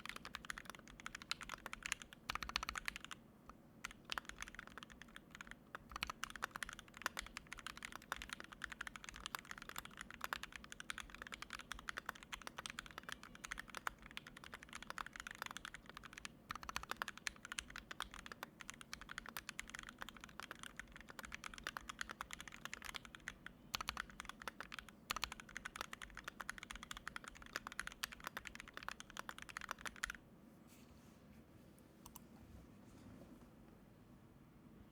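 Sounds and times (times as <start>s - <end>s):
mechanical keyboard typing: 0.0s - 3.2s, 3.8s - 30.2s.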